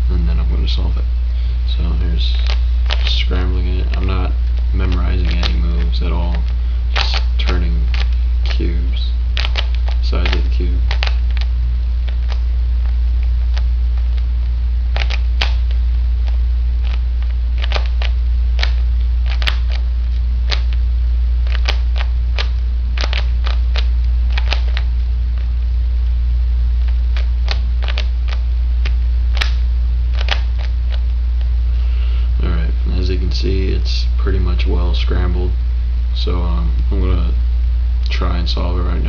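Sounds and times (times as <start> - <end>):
steady low hum: 0.0 - 39.0.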